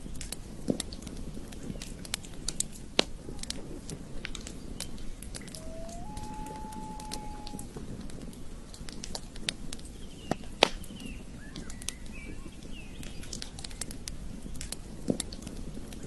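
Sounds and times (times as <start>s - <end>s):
faint bird chirps: 5.5s - 7.7s.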